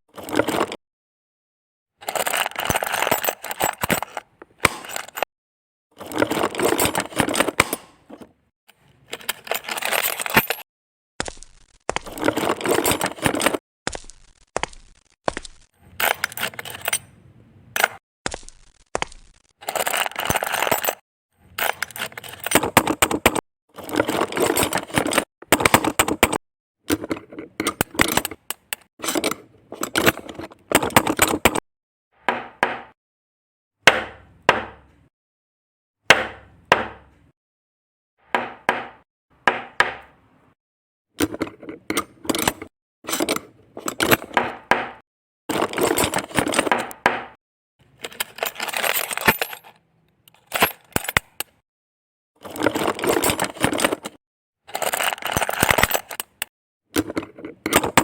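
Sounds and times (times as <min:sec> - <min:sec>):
plastic bricks clicking and clattering: 0:02.0 - 0:05.3, 0:11.2 - 0:16.9, 0:52.4 - 0:58.0.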